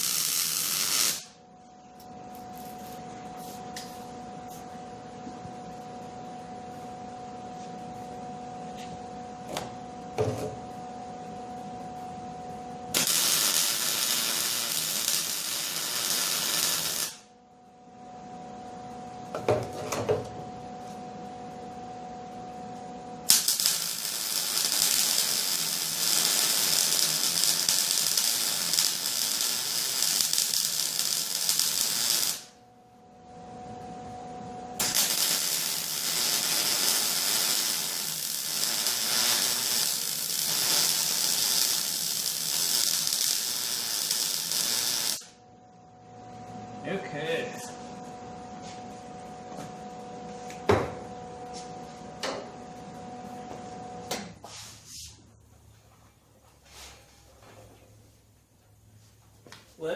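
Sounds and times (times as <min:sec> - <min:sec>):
welding arc crackling and hissing: 0:00.0 - 0:01.4, 0:12.9 - 0:17.3, 0:23.3 - 0:32.6, 0:34.8 - 0:45.4
steady hum: 0:00.0 - 0:59.9.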